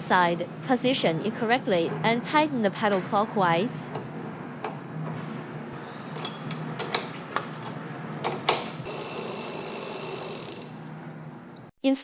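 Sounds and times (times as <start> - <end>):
mechanical whir-ticking: 0.0 - 11.7.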